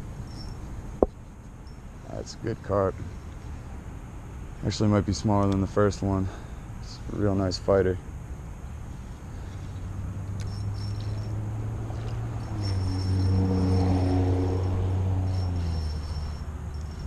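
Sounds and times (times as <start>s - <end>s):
vehicle engine passing by: 9.4s - 17.0s.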